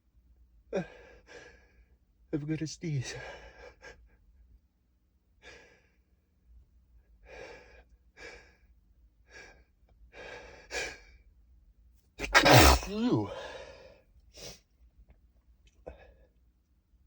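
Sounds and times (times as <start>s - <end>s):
man breathing and gasping: 12.3s - 13.8s.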